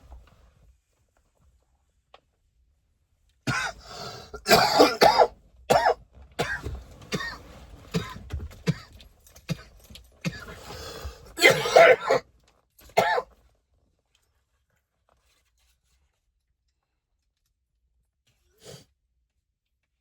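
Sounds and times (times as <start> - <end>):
man coughing: 3.5 - 3.8, 4.4 - 7.4, 11.4 - 12.2, 13.0 - 13.2.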